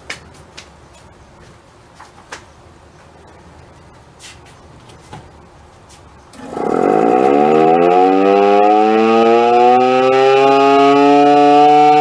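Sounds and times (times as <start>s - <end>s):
mechanical siren winding up: 6.4s - 12.0s.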